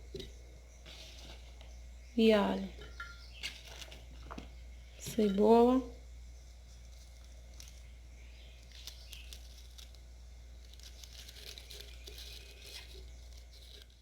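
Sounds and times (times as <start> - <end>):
steady low hum: 0.0 - 14.0
crinkling rustles: 0.8 - 1.8, 2.8 - 5.4, 6.6 - 14.0.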